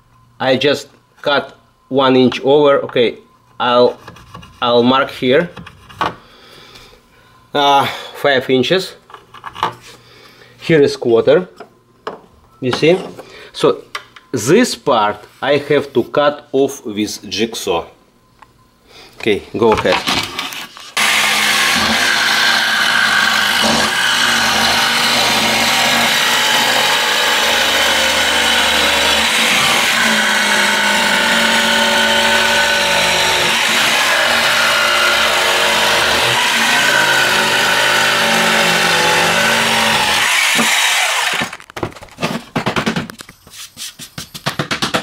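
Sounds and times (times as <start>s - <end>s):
jigsaw cutting: 21.0s - 41.6s
knocks of board handling: 41.4s - 43.2s, 44.2s - 45.0s.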